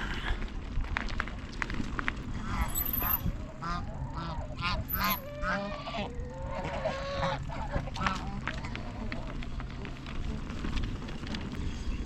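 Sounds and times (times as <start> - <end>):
low steady rumble: 0.0 - 12.0
geese honking: 2.4 - 9.1.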